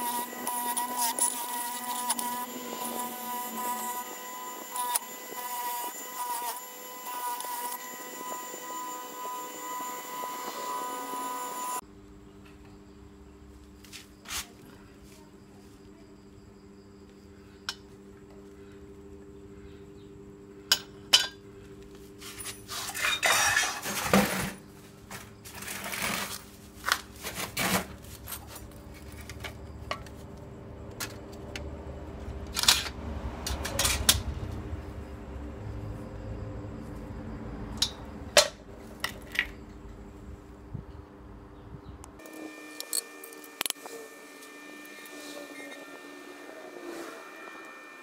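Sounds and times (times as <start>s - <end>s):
metal scraping: 22.2s - 24.6s.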